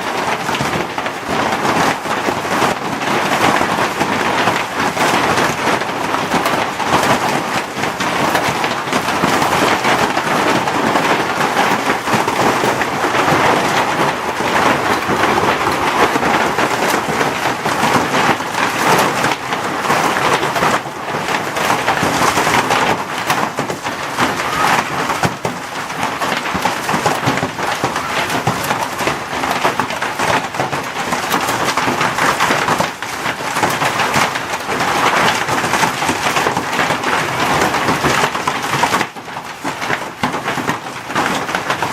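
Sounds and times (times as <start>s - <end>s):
hailstones clattering: 0.0s - 41.9s.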